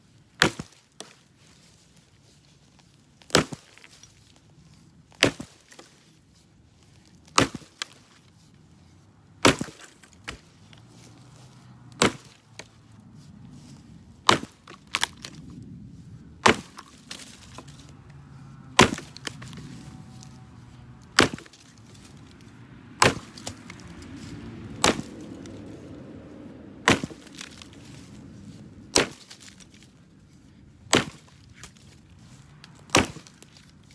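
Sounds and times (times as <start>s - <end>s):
axe chopping wood: 0.4s - 1.1s, 3.2s - 4.0s, 5.1s - 5.9s, 7.2s - 8.2s, 9.4s - 12.8s, 14.2s - 15.5s, 16.4s - 25.9s, 26.8s - 29.9s, 30.8s - 33.9s.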